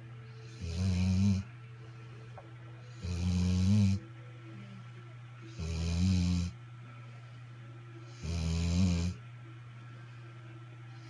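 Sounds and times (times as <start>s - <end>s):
snoring: 0.4s - 1.5s, 2.9s - 4.0s, 5.5s - 6.6s, 8.1s - 9.2s.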